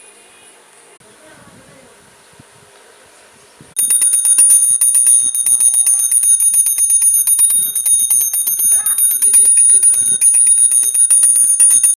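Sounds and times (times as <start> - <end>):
shrill pulsing alarm ringing: 3.8 - 11.9.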